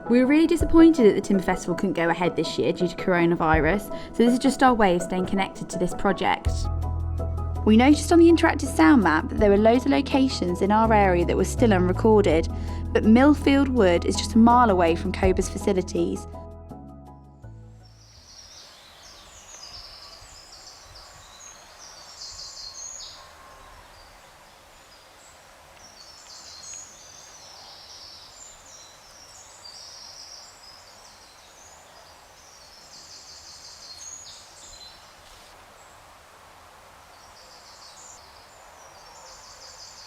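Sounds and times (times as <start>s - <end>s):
small birds singing: 17.8s - 36.0s, 37.0s - 40.0s.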